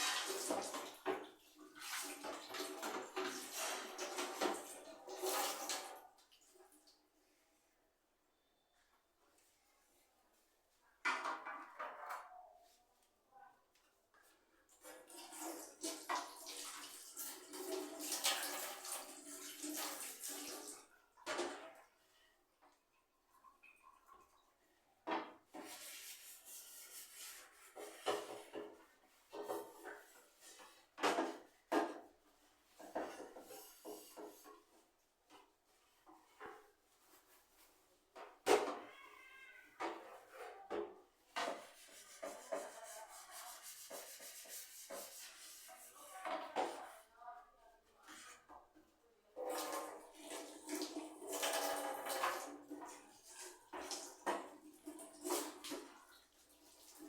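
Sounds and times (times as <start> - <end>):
hand scrubbing a hard surface: 25.5 - 30.8, 41.4 - 47.0.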